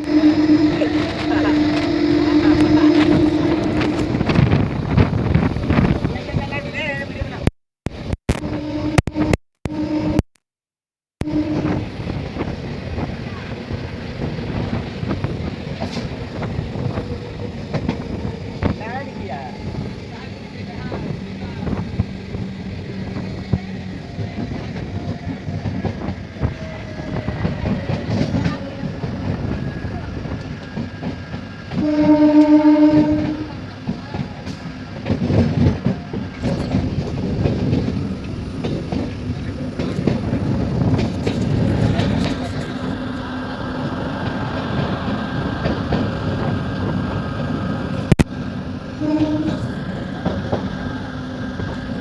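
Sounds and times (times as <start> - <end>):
train horn: 0.0 - 4.6, 8.3 - 10.2, 11.2 - 12.1, 31.7 - 33.7, 49.0 - 49.8
train rumble and wheel clatter: 0.0 - 10.2, 11.2 - 52.0.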